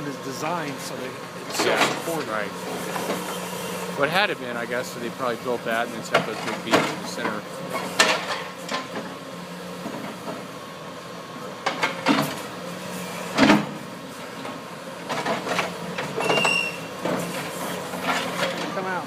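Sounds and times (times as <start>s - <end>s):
excavator diesel engine running: 0.0s - 19.0s
brief high squeal: 16.2s - 16.9s.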